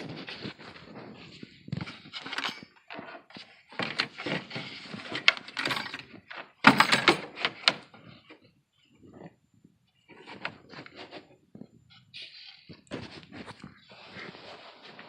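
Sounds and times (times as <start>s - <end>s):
metal tools clinking and knocking: 2.2s - 3.2s, 5.1s - 7.8s.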